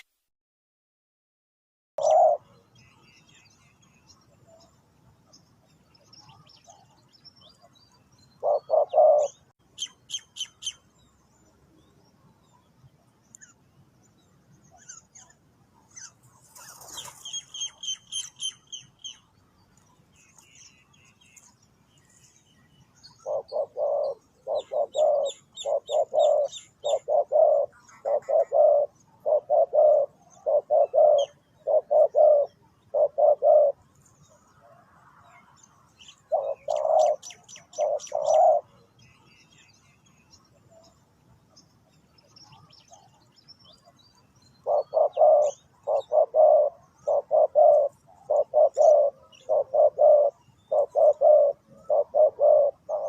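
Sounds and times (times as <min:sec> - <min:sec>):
dove cooing: 0:02.0 - 0:02.5, 0:08.4 - 0:09.5, 0:23.1 - 0:33.8, 0:36.2 - 0:38.8, 0:44.6 - 0:53.0
small bird chirping trills: 0:02.0 - 0:34.6, 0:35.3 - 0:53.0.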